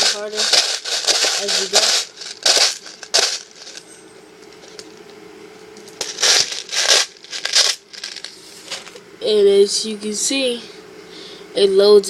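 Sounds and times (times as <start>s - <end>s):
bbs rattling and clicking: 0.0s - 5.1s, 5.8s - 9.0s.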